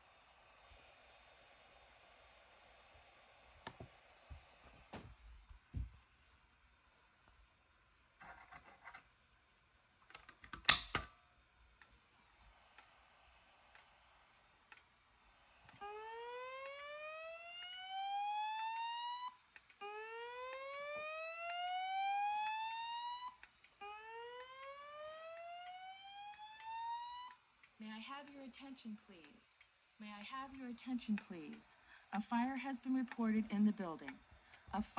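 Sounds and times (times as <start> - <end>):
sharp clicks: 10.6 - 34.9
fire alarm whoop sweeps: 13.7 - 29.7.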